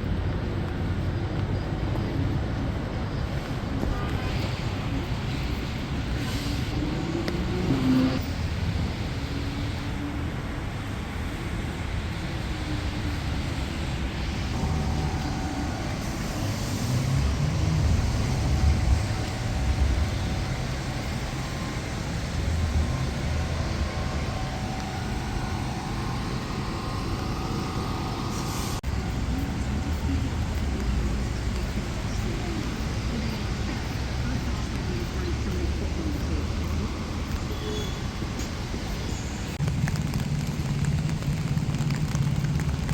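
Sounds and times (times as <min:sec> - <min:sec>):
rumble of passing vehicles: 0:00.0 - 0:42.9.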